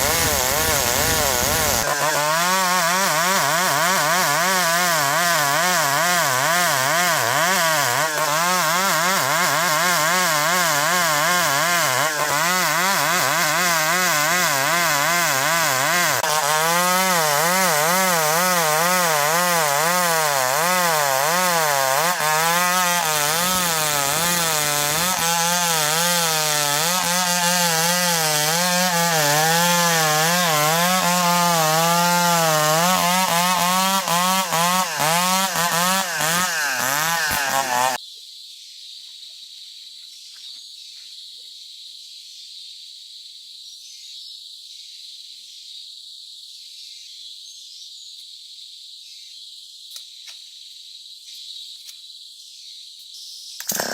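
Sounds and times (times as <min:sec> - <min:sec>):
chainsaw cutting wood: 0:00.0 - 0:38.0, 0:53.6 - 0:53.9.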